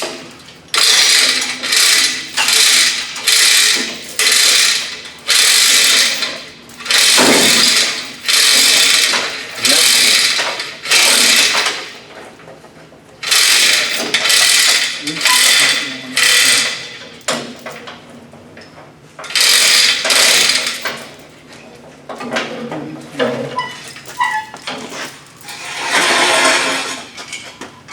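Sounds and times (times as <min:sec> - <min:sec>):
ratcheting lifting gear clicking: 0:00.7 - 0:11.8, 0:13.2 - 0:17.0, 0:19.2 - 0:21.0.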